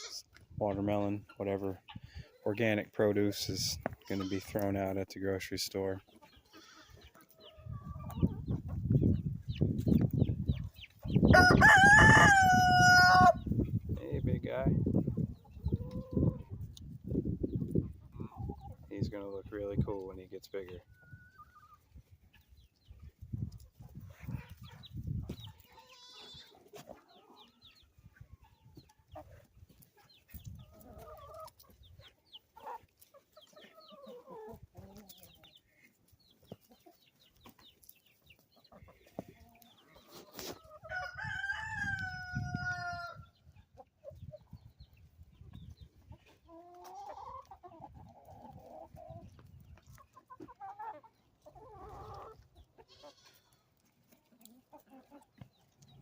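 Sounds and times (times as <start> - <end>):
chickens clucking: 0.0 - 56.0
rooster crowing: 11.3 - 13.4, 40.9 - 43.2.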